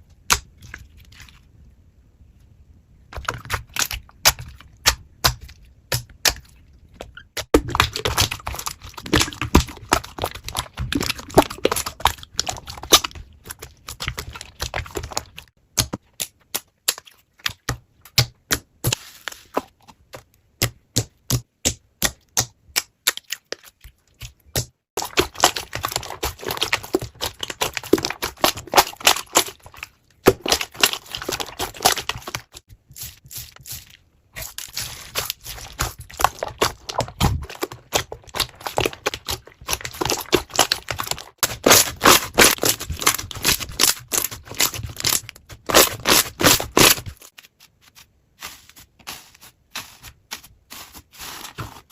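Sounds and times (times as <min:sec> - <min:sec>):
slime popping and crackling: 0:25.0 - 0:32.6, 0:34.4 - 0:47.2.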